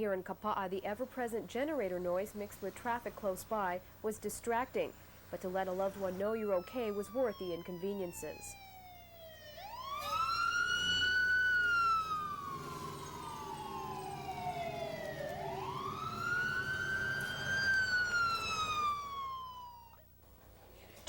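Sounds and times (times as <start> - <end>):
low steady hum: 0.0 - 21.0
siren wailing: 5.9 - 20.0.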